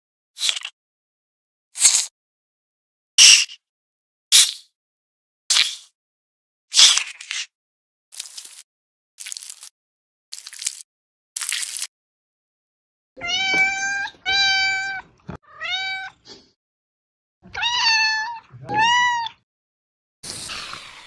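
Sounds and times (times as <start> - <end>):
cat meowing: 13.2 - 16.2, 17.5 - 19.4
hiss: 20.2 - 21.0.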